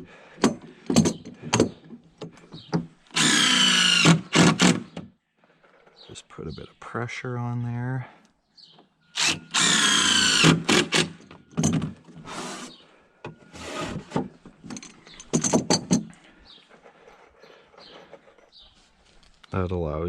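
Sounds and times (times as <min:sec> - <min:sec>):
power drill driving screws into wood: 0:03.1 - 0:05.1, 0:09.2 - 0:12.8.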